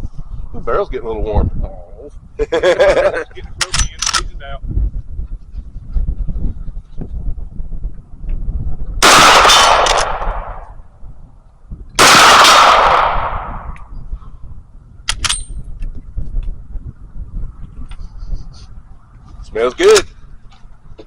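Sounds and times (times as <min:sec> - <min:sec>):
gunshots: 0:09.0 - 0:10.8, 0:12.0 - 0:13.8.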